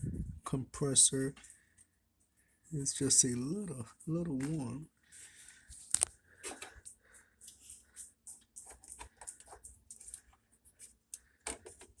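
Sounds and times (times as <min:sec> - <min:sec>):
handling clicks and rustling: 0:02.8 - 0:12.0.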